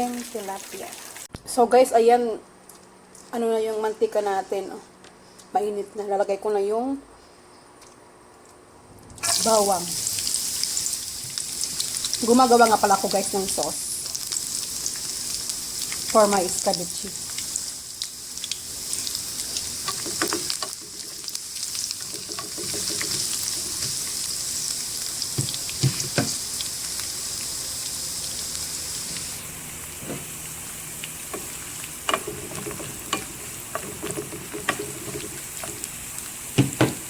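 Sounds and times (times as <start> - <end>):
garlic sizzling in oil: 0.0 - 1.3, 9.2 - 37.0.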